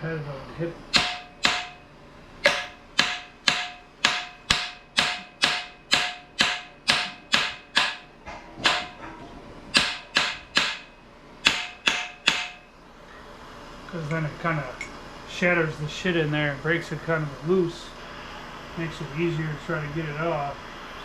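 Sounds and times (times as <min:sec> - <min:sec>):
hammer striking metal bolts: 0:00.9 - 0:01.8, 0:02.4 - 0:09.1, 0:09.7 - 0:12.6.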